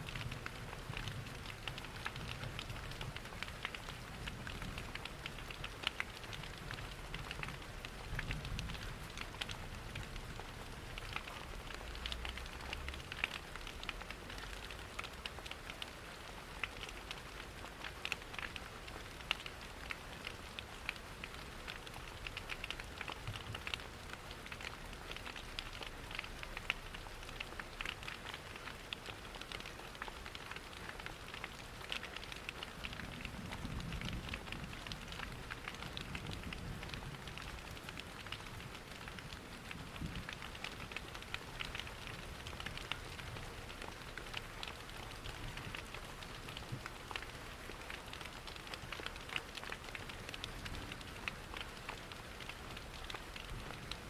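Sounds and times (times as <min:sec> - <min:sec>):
steady rain hiss: 0:00.0 - 0:54.0
wood fire crackling: 0:00.4 - 0:54.0.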